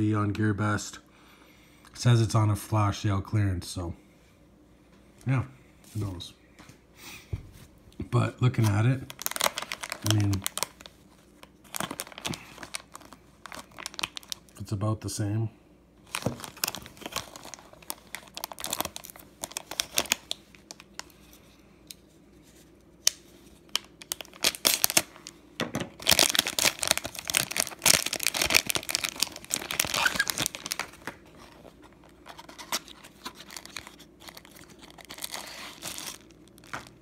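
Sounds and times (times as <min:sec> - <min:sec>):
packaging crinkling and tearing: 0:08.5 - 0:14.6, 0:16.0 - 0:21.2, 0:23.0 - 0:37.0.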